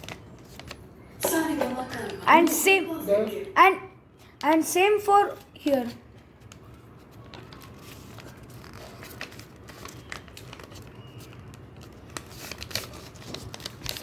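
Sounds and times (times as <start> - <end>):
paper crinkling and rustling: 0.0 - 2.2, 5.6 - 14.0.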